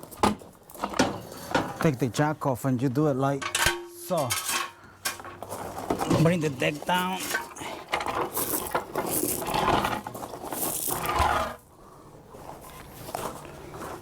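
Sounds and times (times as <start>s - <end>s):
metal clanking and rattling: 3.3s - 10.7s.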